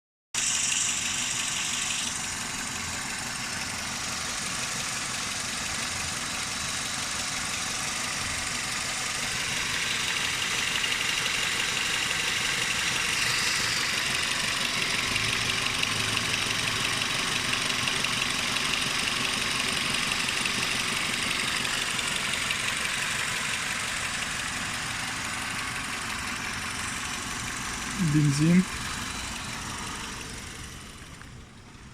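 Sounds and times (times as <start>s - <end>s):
car engine idling roughly with knock: 0.4s - 31.9s
man talking: 27.9s - 28.8s.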